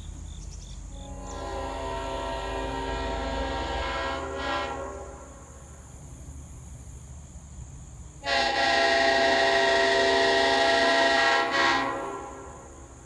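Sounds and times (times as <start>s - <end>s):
locomotive horn chord: 0.9s - 6.1s, 8.2s - 13.0s.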